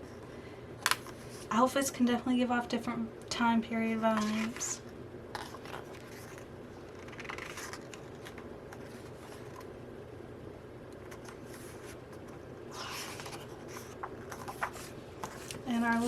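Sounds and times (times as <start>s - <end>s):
low room hum: 0.0s - 16.0s
paper pages rustling: 4.1s - 4.7s, 5.3s - 9.7s, 11.0s - 16.0s.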